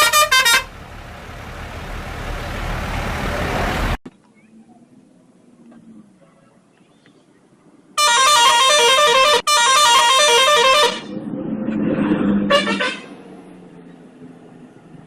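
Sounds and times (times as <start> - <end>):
multi-tone musical bus horn: 0.0 - 0.8, 8.0 - 11.1, 12.4 - 13.2
swell of noise: 11.0 - 15.0.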